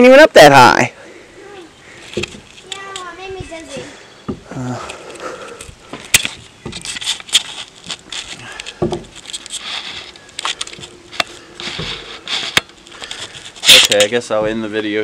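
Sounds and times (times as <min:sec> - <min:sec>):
crackles scrapes and knocks: 0:02.0 - 0:03.8, 0:05.1 - 0:14.6.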